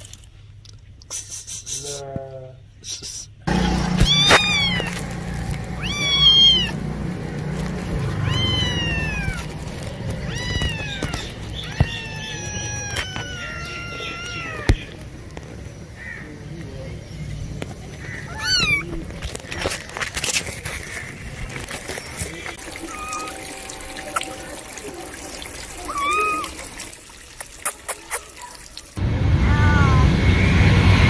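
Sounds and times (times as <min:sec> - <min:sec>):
cat meowing: 0:03.5 - 0:06.8, 0:07.8 - 0:15.0, 0:18.0 - 0:19.1, 0:22.8 - 0:23.3, 0:25.8 - 0:26.8.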